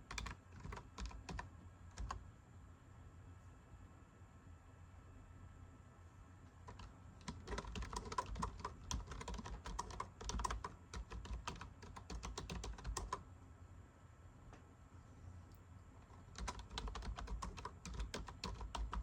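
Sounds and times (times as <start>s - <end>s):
computer keyboard typing: 0.0s - 2.2s, 6.6s - 13.2s, 16.0s - 19.0s.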